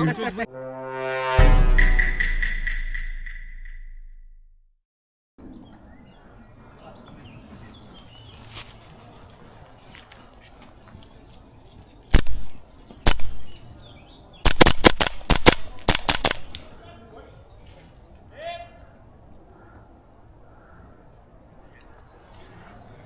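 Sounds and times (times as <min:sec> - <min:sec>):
birds chirping: 0:05.4 - 0:23.0
airsoft gun shots: 0:12.1 - 0:13.6, 0:14.4 - 0:16.7.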